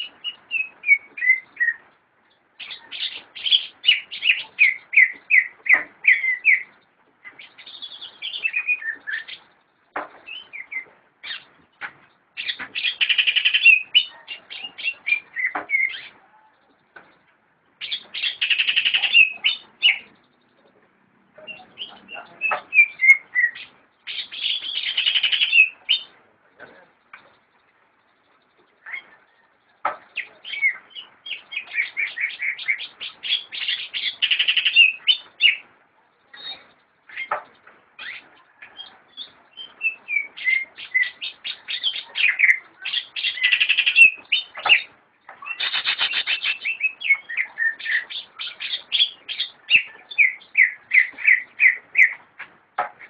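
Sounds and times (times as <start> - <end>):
bird singing whistled chirps: 0.0 - 1.8, 2.6 - 6.7, 7.3 - 9.5, 10.2 - 11.5, 12.4 - 16.2, 21.4 - 26.1, 30.2 - 35.6, 38.0 - 52.2.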